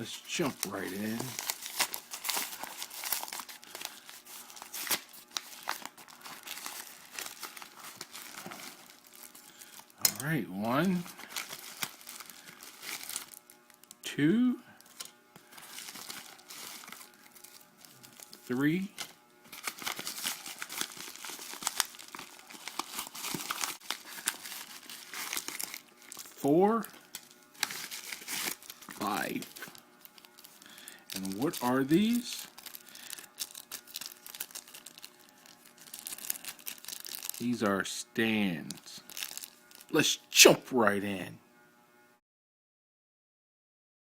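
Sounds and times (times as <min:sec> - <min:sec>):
packaging crinkling: 0:00.0 - 0:14.0, 0:14.8 - 0:37.6, 0:38.6 - 0:40.0.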